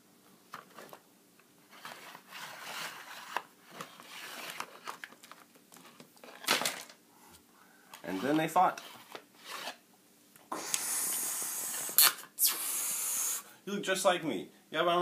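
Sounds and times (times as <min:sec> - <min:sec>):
crinkly rustling scrapes: 0:01.6 - 0:06.5.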